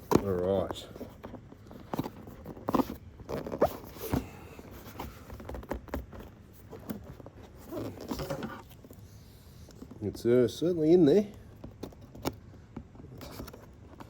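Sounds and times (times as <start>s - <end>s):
cardboard box being opened: 0.0s - 8.9s.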